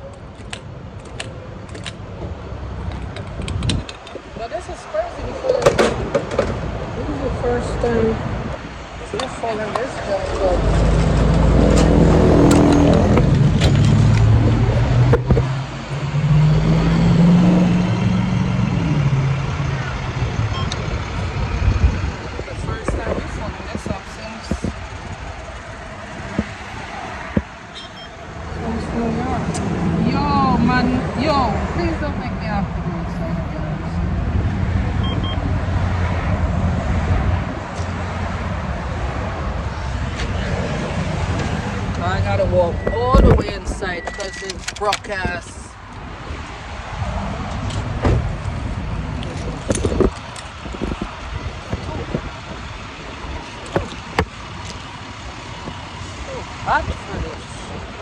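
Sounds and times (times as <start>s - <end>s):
vehicle engine humming: 8.0s - 44.2s, 45.5s - 58.0s
car engine running: 10.0s - 20.6s.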